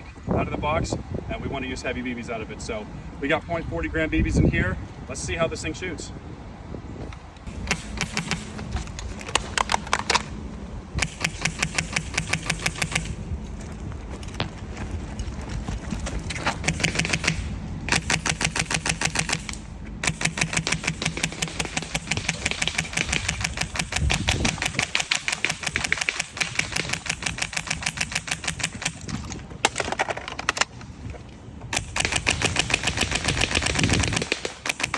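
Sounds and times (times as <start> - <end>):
airsoft rifle firing automatic: 7.5 - 8.6, 11.0 - 13.2, 16.6 - 29.1, 31.7 - 34.9.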